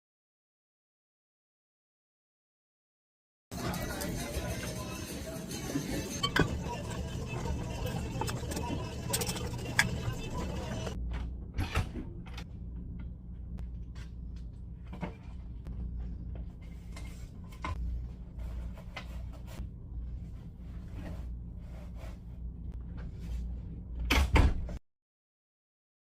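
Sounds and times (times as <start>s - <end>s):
steady low hum: 3.6s - 24.1s.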